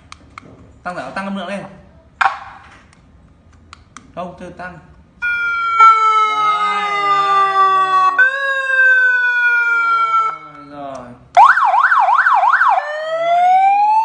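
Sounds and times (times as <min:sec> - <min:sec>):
electronic siren: 0:05.2 - 0:10.6, 0:11.4 - 0:14.0.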